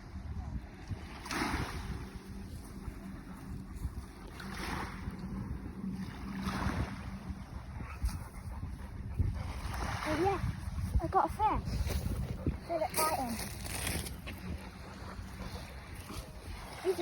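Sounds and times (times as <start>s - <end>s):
wind buffeting the microphone: 0.0s - 17.0s
sea waves washing on shore: 0.7s - 8.0s, 9.4s - 17.0s.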